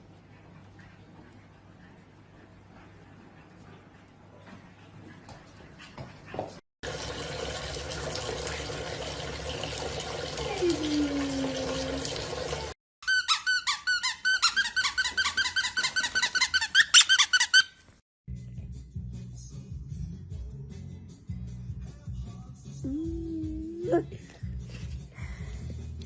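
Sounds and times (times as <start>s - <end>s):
fast high squeaks: 13.0s - 17.9s.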